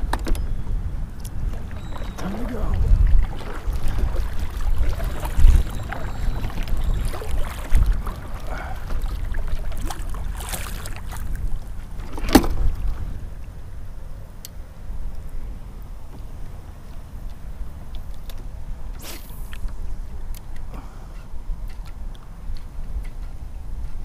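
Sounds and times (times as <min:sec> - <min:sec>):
wind buffeting microphone: 0:00.0 - 0:18.9
paddle splashing water: 0:01.3 - 0:13.3.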